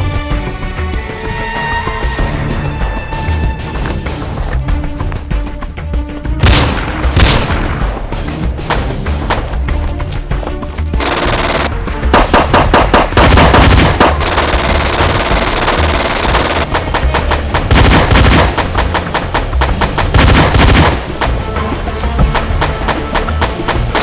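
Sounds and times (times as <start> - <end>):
background music: 0.0 - 24.0
automatic gunfire: 11.0 - 21.2.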